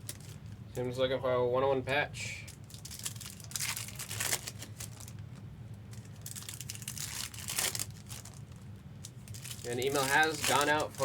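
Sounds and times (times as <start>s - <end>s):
steady low hum: 0.0s - 11.0s
packaging crinkling: 2.5s - 11.0s.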